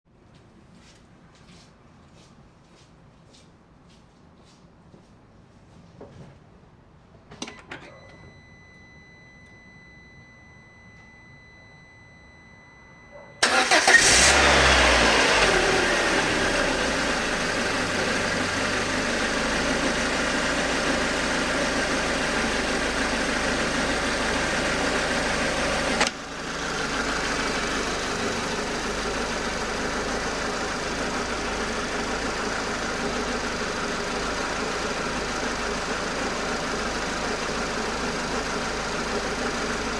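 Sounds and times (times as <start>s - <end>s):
ignition click: 13.4s - 14.6s, 25.9s - 26.2s
car engine cranking and idling: 13.4s - 39.9s.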